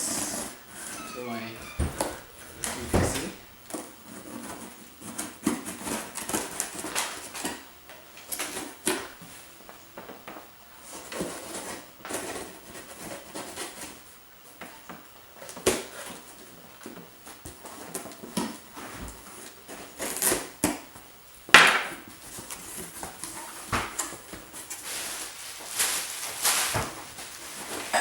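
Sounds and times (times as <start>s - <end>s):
packing material rustling: 22.4s - 28.0s.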